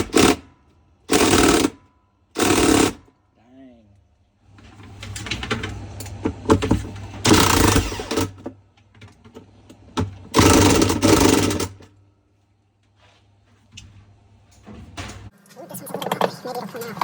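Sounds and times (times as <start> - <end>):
power tool bursts: 7.2 - 8.4.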